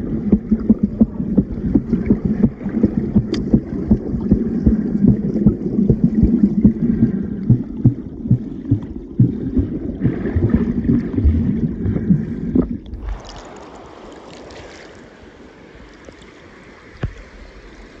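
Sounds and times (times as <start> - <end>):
wind buffeting microphone: 0.0 - 13.4
flowing river water: 0.0 - 18.0.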